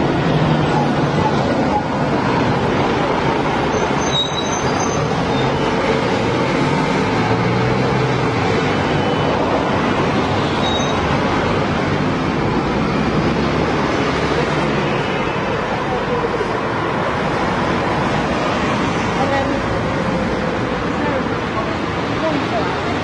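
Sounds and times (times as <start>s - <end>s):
road traffic rumble: 0.0s - 23.0s
faint high squeaks: 3.7s - 5.6s.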